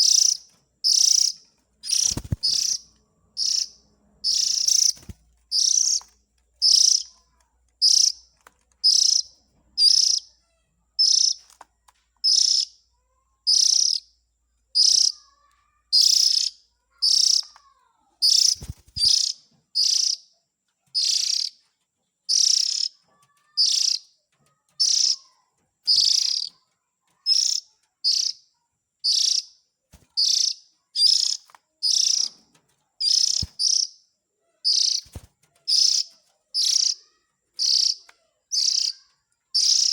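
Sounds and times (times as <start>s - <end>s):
bird harsh calls: 0.0s - 7.2s, 16.0s - 17.6s, 18.2s - 20.2s, 22.3s - 24.1s, 24.8s - 26.6s, 33.0s - 39.9s.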